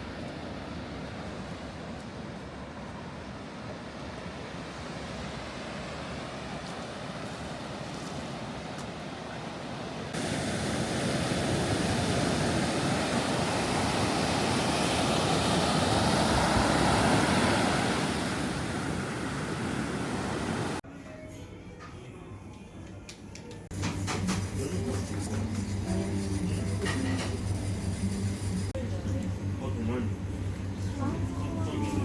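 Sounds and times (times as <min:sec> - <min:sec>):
sea surf washing onto beach: 0:00.0 - 0:20.8.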